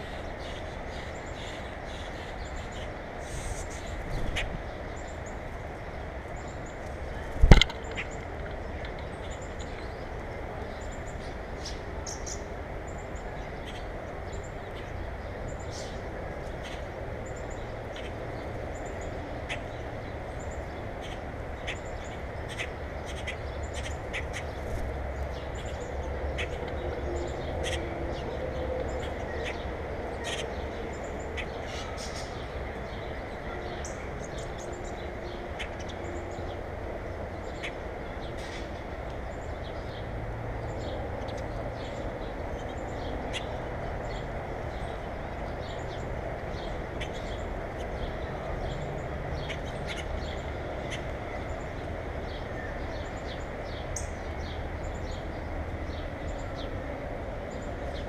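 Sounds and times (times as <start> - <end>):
small birds chirping: 0.0 - 58.0
sharp knock: 7.4 - 8.0.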